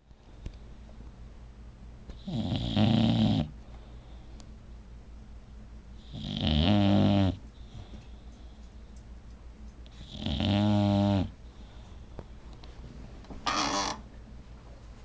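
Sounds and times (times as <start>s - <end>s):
dog snoring loudly: 2.2s - 3.5s, 6.0s - 7.4s, 10.0s - 11.4s.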